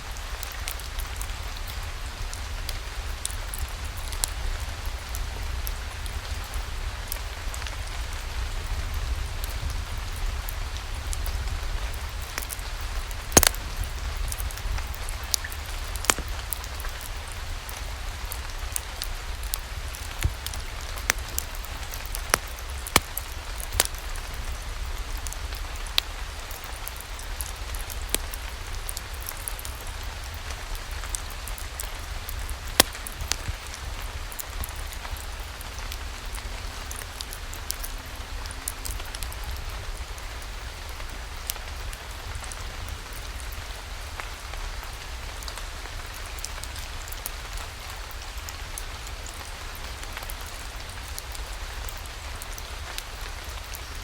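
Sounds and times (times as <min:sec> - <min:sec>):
steady rain: 0:00.0 - 0:54.0
sharp pops and clicks: 0:13.3 - 0:14.4, 0:15.4 - 0:16.9, 0:20.1 - 0:24.0, 0:32.7 - 0:33.6.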